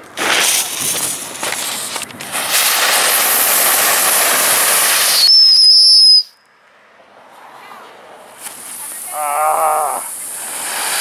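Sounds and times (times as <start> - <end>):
firework hissing and whistling: 0.0 - 6.4, 8.3 - 11.0.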